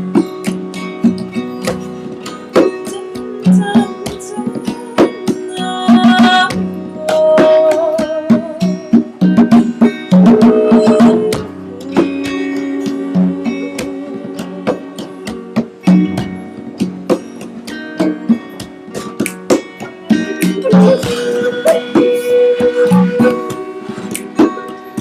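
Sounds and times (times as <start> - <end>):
hand drum beats: 0.0 - 25.0
plucked guitar: 0.0 - 25.0
flute melody: 10.1 - 12.2, 19.8 - 25.0.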